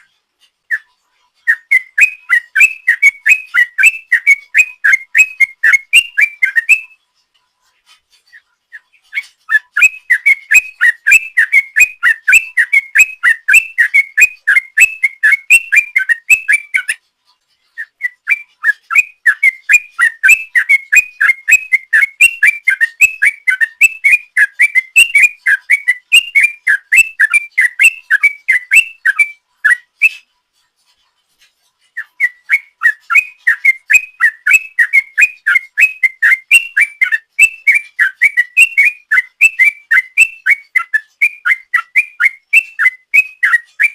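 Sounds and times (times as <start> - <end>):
bulbul singing bubbling whistles: 32.0 - 43.9.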